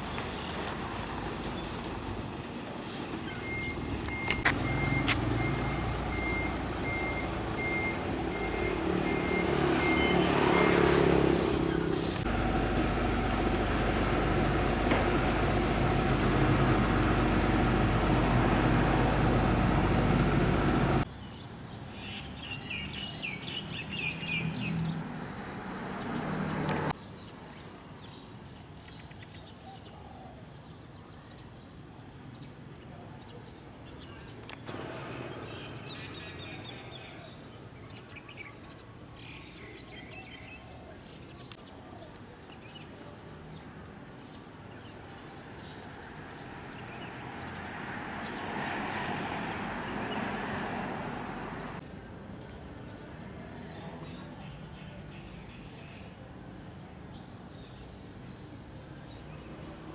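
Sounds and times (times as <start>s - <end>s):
birds chirping: 0.0s - 25.0s
quiet outdoor background: 0.0s - 59.9s
reversing beeper: 3.4s - 11.2s
truck engine running: 3.5s - 21.0s.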